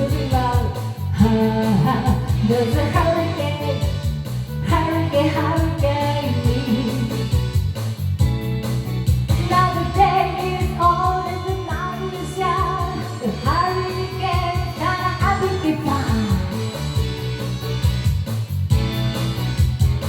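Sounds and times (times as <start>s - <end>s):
rock backing track: 0.0s - 20.0s.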